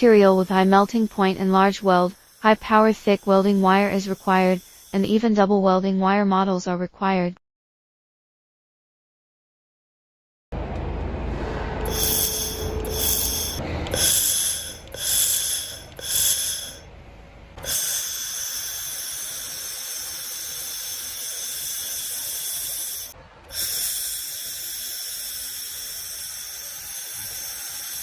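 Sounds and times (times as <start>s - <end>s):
laser welder hissing: 0.0s - 5.1s, 11.9s - 16.9s, 17.6s - 28.0s
laser welder hum: 0.0s - 5.1s, 11.8s - 17.0s, 17.6s - 28.0s.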